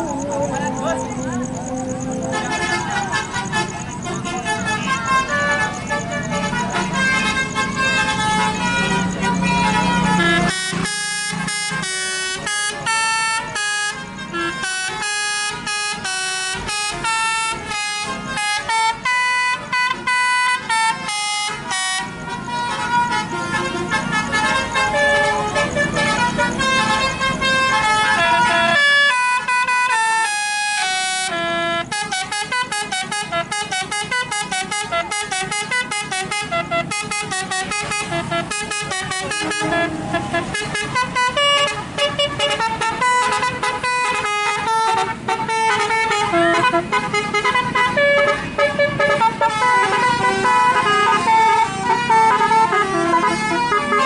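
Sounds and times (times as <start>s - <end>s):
musical air horn playing a tune: 2.2s - 54.0s.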